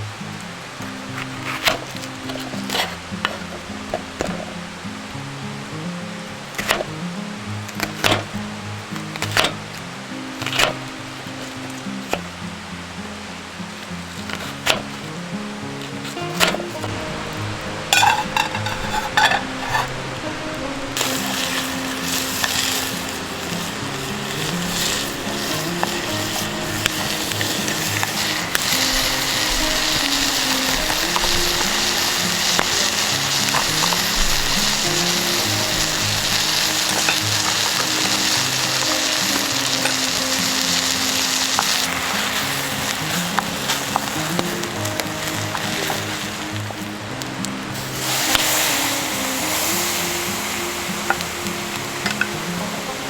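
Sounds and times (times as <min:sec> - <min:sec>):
food sizzling in a pan: 0:00.0 - 0:53.0
soft background music: 0:00.0 - 0:53.0
utensil clattering against pan: 0:17.9 - 0:20.0.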